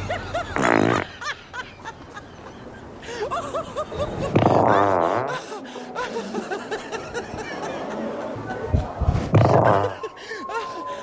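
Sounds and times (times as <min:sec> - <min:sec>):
snickering laughter: 0:00.0 - 0:10.8
fart sound effect: 0:00.6 - 0:01.0, 0:04.3 - 0:05.3, 0:09.3 - 0:09.9.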